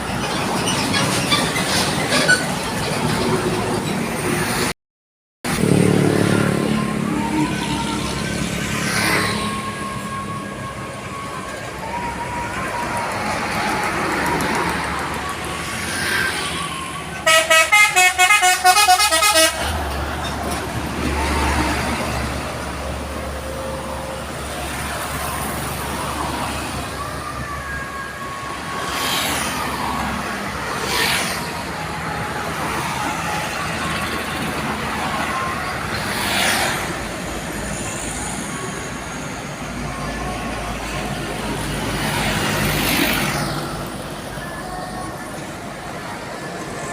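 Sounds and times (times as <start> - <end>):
road traffic: 0.0 - 4.8, 5.4 - 46.9
vehicles passing by: 0.0 - 4.8, 5.5 - 46.9
musical air horn: 17.2 - 19.9.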